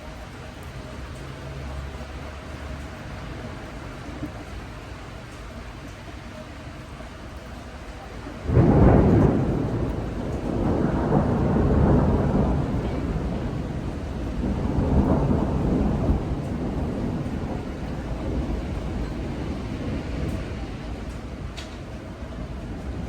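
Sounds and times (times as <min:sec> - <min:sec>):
rain hissing: 0:00.0 - 0:23.0
thunder rumbling: 0:08.3 - 0:23.0.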